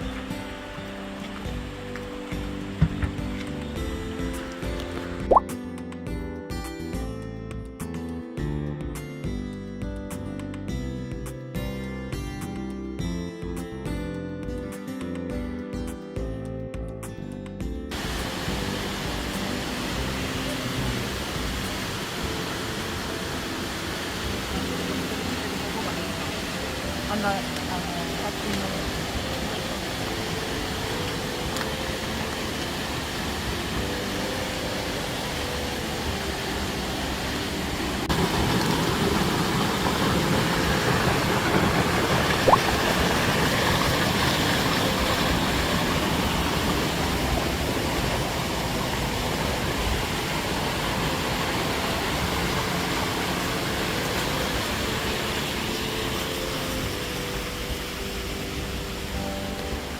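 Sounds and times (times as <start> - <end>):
waterfall rushing: 0.0 - 5.4, 17.9 - 59.9.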